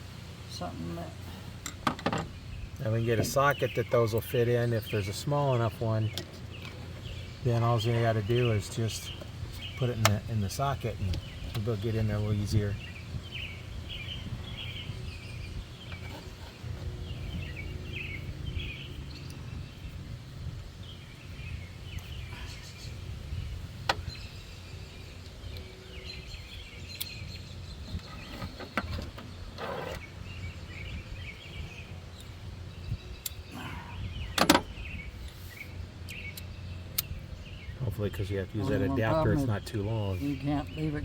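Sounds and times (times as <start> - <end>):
birds chirping: 0.0 - 41.0
steady low rumble: 16.6 - 28.0.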